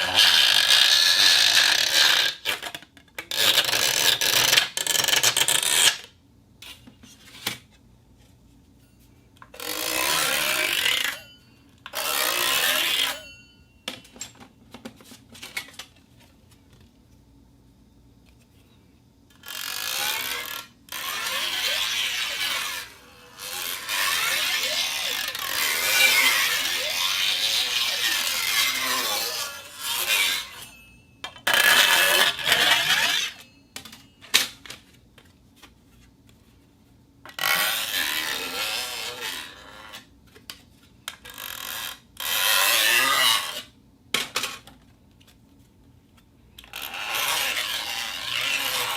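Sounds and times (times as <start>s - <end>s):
steel sheet scraping: 9.6s - 11.3s, 12.0s - 13.4s, 19.5s - 30.9s, 31.5s - 33.6s.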